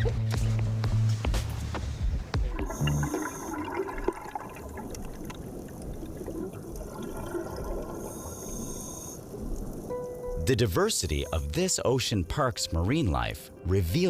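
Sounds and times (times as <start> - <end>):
underwater bubbling: 2.4 - 10.5
rush of water: 2.5 - 10.2.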